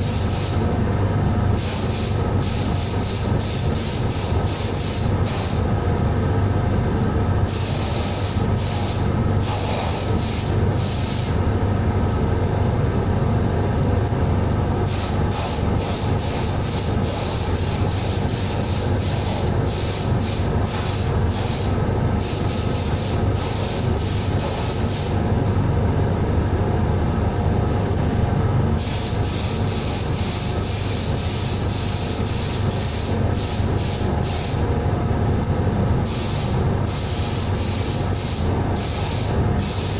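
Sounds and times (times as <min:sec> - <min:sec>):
compressed-air gun hissing: 0:00.0 - 0:00.8, 0:01.6 - 0:05.7, 0:07.4 - 0:11.4, 0:14.8 - 0:25.2, 0:28.8 - 0:34.7, 0:36.0 - 0:39.9
low machine hum: 0:00.0 - 0:39.9.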